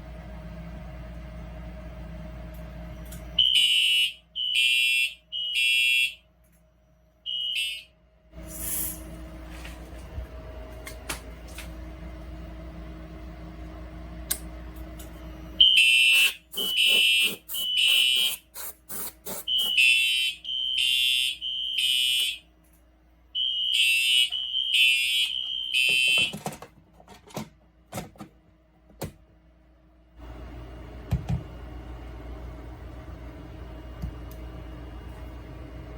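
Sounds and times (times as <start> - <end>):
fire alarm horn pulses: 3.4 - 6.3, 7.2 - 8.0, 15.6 - 18.5, 19.4 - 22.5, 23.3 - 26.3.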